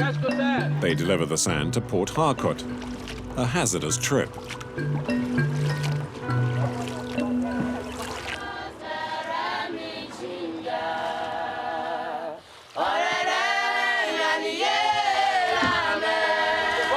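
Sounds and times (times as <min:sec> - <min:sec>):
choir singing unaccompanied: 0:07.4 - 0:16.9.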